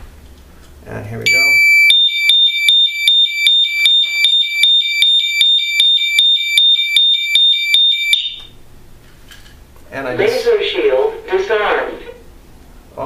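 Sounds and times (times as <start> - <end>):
two-tone electronic siren: 1.3 - 8.5.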